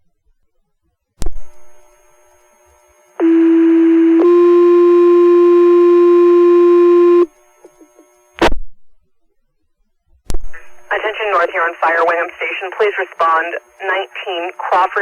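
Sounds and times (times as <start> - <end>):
two-tone paging tone: 3.2 - 7.3
radio key-up burst: 10.6 - 15.0.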